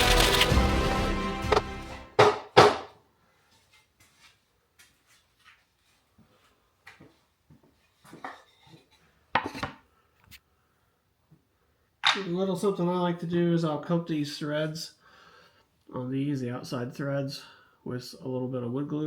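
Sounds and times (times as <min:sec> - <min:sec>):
sharp knocks: 0:01.5 - 0:02.9.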